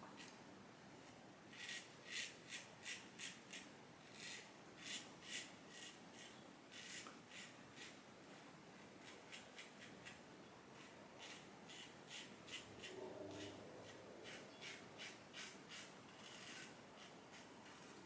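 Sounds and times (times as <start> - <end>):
razor scraping through stubble: 10.8 - 18.0.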